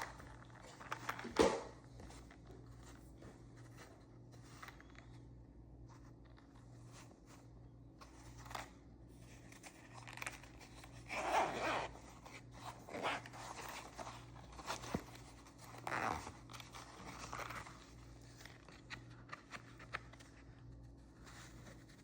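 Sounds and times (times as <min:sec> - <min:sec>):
packaging rustling and tearing: 0:00.0 - 0:02.4, 0:08.0 - 0:22.0.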